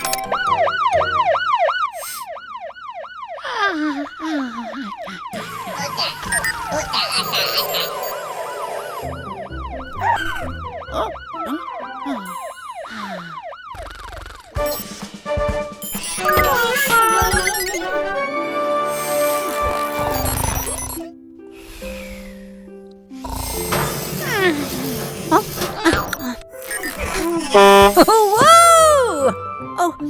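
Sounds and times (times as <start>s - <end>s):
cartoon siren wail: 0.0s - 14.6s, 16.0s - 18.3s, 26.9s - 29.4s
light background music: 14.6s - 30.0s.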